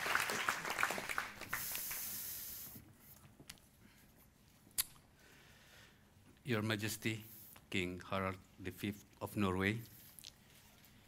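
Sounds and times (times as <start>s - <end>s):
audience applause: 0.0s - 2.1s.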